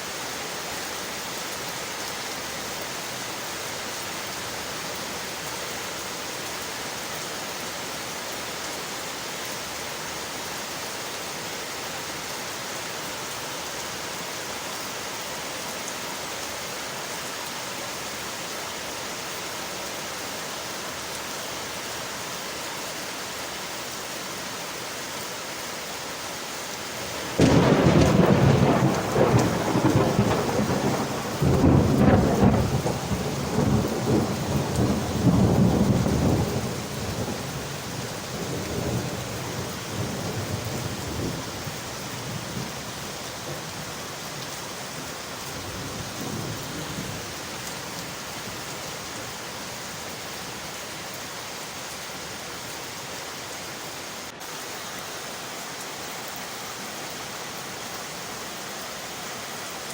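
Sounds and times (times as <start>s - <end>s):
rain on windowpanes: 0.0s - 59.9s
thunder clap and rumble: 27.1s - 37.6s.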